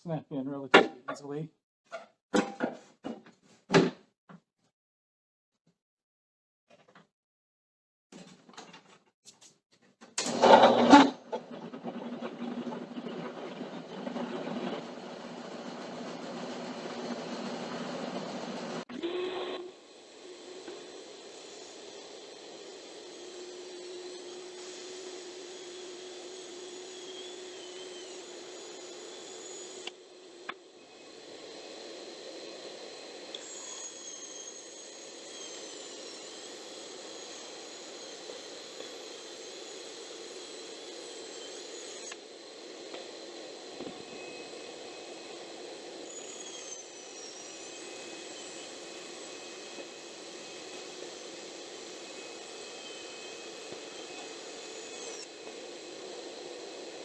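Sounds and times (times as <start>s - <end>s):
band saw running: 10.2s - 57.0s.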